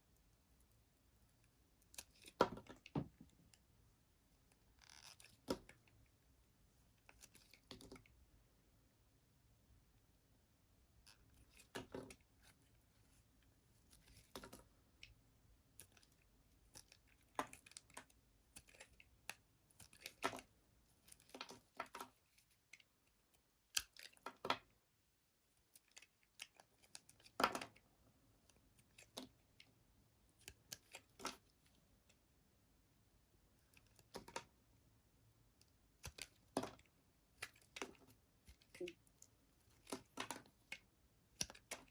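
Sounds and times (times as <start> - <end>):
knife crunching through soap: 39.7 - 41.9.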